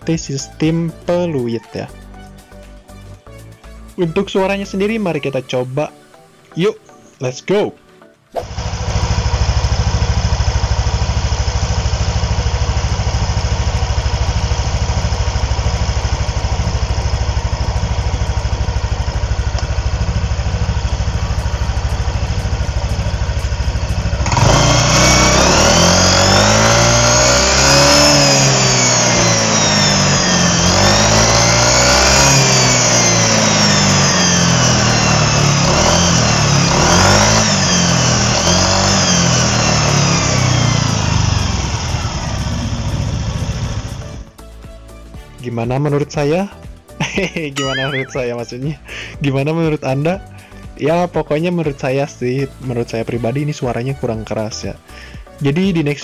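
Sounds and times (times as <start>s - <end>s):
scooter engine idling and revving: 8.4s - 44.4s.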